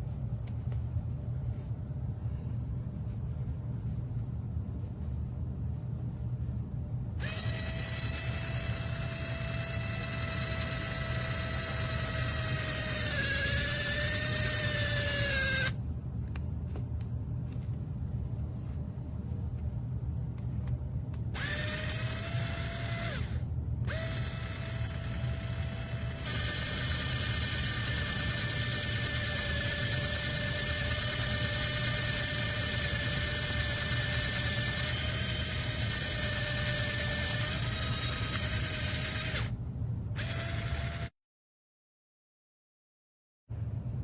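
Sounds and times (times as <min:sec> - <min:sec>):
electric drill pen whining: 0:07.2 - 0:15.8, 0:21.4 - 0:39.5, 0:40.2 - 0:41.1.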